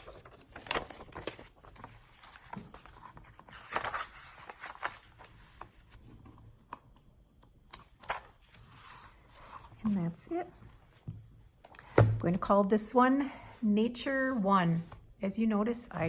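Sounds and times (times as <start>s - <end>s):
paper pages rustling: 0.0s - 6.9s, 7.7s - 11.0s.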